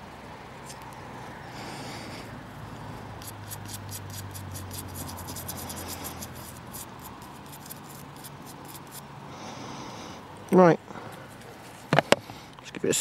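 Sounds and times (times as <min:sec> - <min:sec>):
toothbrush scrubbing metal: 0:03.2 - 0:09.0.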